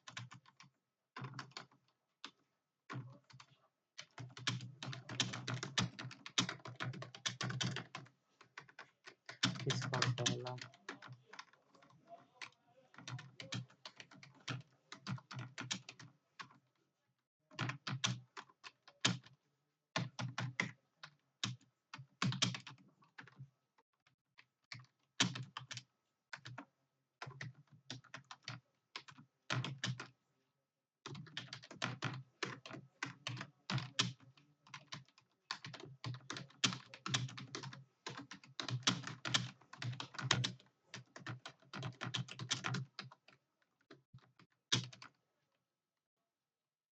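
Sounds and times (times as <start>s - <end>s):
fast typing on keyboard: 0.0s - 16.7s, 17.5s - 19.4s, 20.0s - 23.5s, 24.4s - 30.2s, 31.0s - 45.2s.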